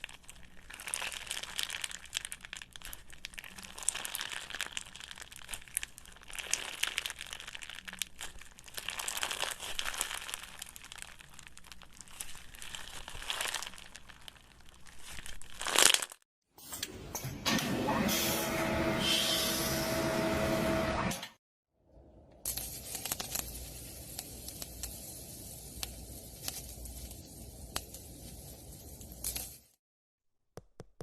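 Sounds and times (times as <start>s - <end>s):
crunchy material being stirred: 0.0s - 16.2s.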